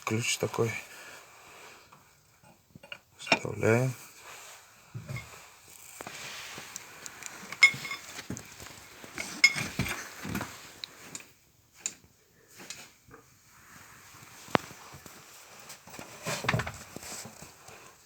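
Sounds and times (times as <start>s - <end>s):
wrench clinking and scraping on metal: 2.8s - 3.6s, 5.0s - 6.2s, 7.2s - 10.1s.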